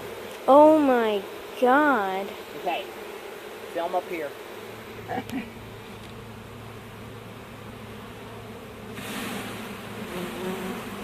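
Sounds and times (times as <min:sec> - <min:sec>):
honeybees buzzing: 0:00.0 - 0:11.0
rush of hiss-like noise: 0:08.9 - 0:10.4.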